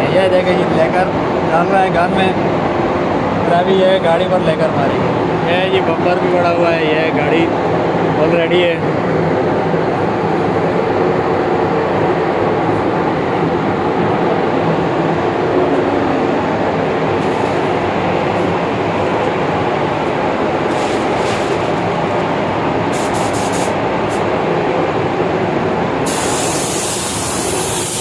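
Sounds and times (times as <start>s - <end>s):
ventilation fans running: 0.0s - 28.0s
spray gun air hisses: 22.9s - 23.8s, 26.0s - 28.0s.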